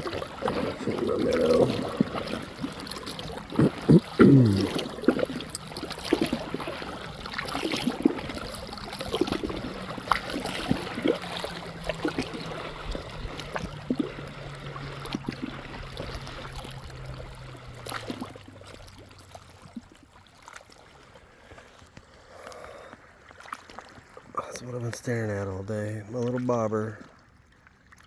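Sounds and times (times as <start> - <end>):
distant engine hum: 0.0 - 20.0
river water lapping at bank: 0.0 - 28.0.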